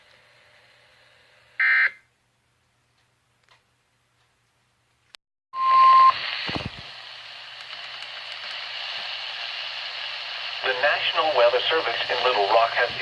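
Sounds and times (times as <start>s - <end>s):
radio hiss: 6.0s - 13.0s.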